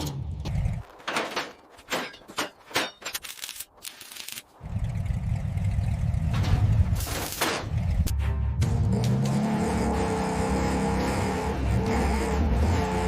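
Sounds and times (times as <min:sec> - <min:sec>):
car engine rumbling: 0:00.0 - 0:01.0, 0:04.6 - 0:13.0
sharp knocks and clanks: 0:00.0 - 0:03.2.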